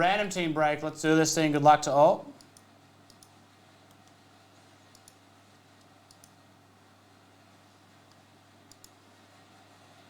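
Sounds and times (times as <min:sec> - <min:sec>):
low steady hum: 0:00.0 - 0:10.0
faint computer mouse clicks: 0:02.4 - 0:04.2, 0:04.9 - 0:05.2, 0:05.8 - 0:06.4, 0:08.1 - 0:09.0.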